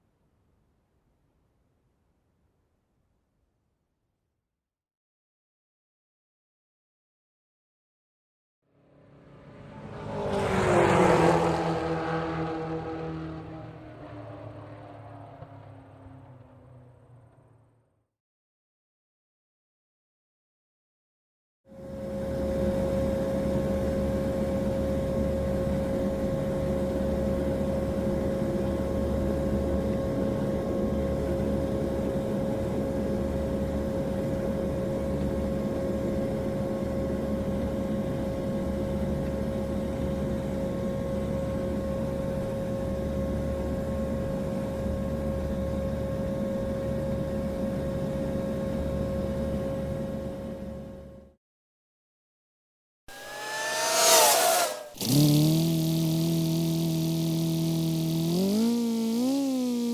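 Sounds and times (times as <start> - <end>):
car engine rumble with whine: 8.8 - 17.9, 53.1 - 59.9.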